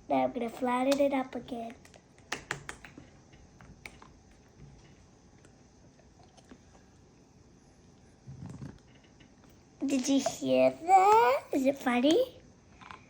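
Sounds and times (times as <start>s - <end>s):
sticky clicks of goo pressed by hand: 1.8s - 4.1s.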